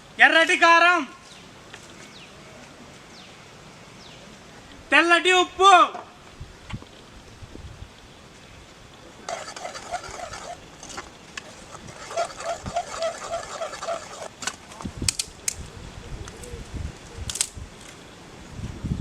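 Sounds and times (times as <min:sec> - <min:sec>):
spoon scraping cooking pan: 0:09.3 - 0:14.3.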